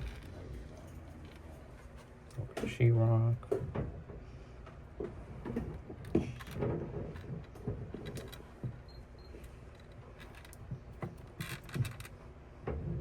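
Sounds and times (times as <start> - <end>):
tools and objects clicking and rattling: 5.4 - 8.8, 9.4 - 12.2.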